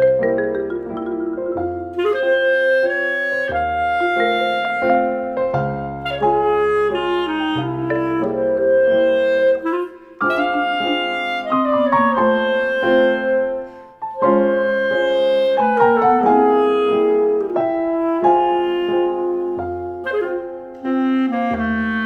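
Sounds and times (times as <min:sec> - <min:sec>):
piano: 0:00.0 - 0:22.0
woodwind melody: 0:00.0 - 0:22.0.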